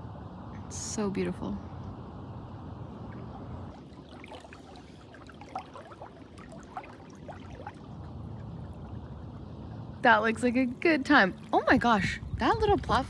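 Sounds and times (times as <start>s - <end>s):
low steady hum: 0.0s - 13.0s
small splashes: 3.0s - 9.8s
water gurgling against canoe hull: 3.0s - 10.0s.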